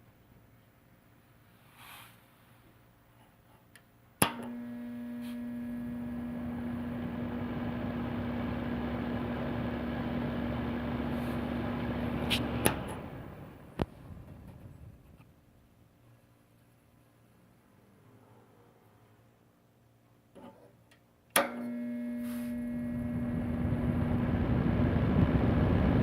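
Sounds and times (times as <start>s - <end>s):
heater fan blowing with hum: 4.2s - 15.7s, 21.4s - 26.0s
heater switch clicks: 12.2s - 13.0s, 21.4s - 22.8s.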